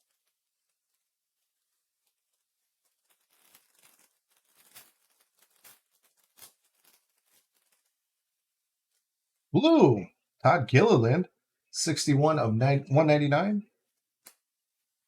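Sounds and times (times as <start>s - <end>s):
wrapper crinkling and tearing: 2.0s - 8.0s.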